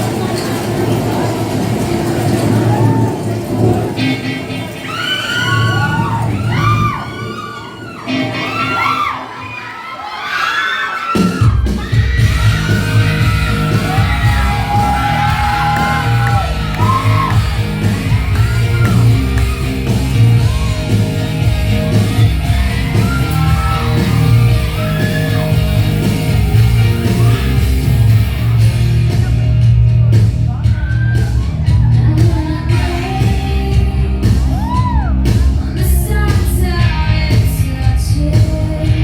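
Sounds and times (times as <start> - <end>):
audience shouting and whooping: 2.2 - 29.3, 30.2 - 36.2
loud pop music with vocals: 10.8 - 39.0.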